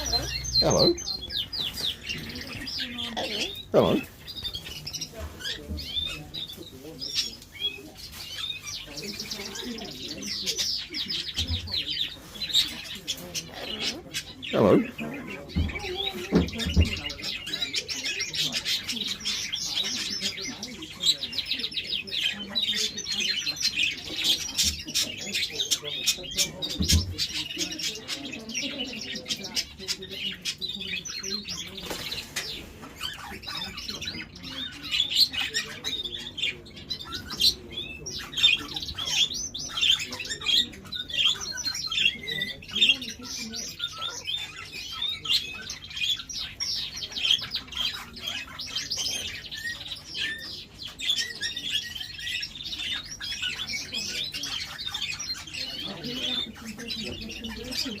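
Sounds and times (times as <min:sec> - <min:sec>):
parrots chirping and squawking: 0:00.0 - 0:58.0.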